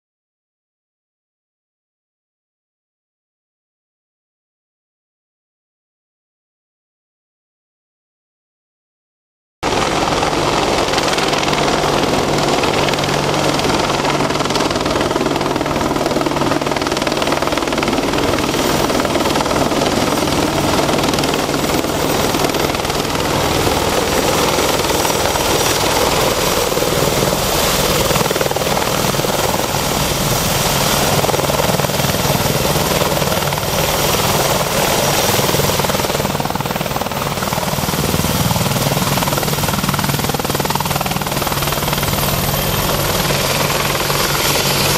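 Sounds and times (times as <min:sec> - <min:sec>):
helicopter rotor and turbine: 0:09.6 - 0:44.9.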